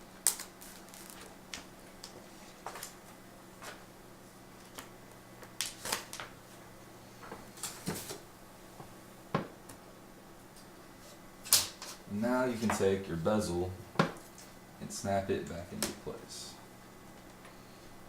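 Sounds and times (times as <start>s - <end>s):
faint steady hum: 0.0s - 18.0s
plastic film peeling crackles: 0.2s - 3.0s, 4.6s - 6.4s.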